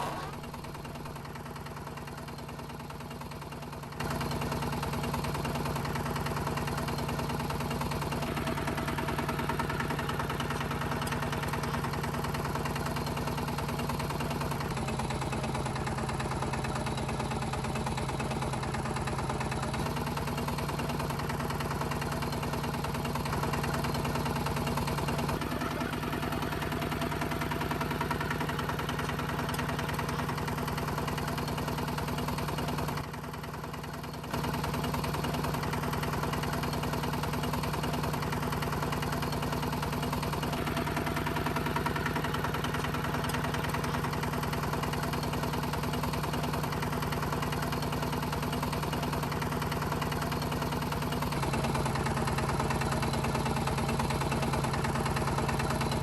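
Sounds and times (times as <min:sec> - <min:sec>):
small motor humming: 0:00.0 - 0:01.3.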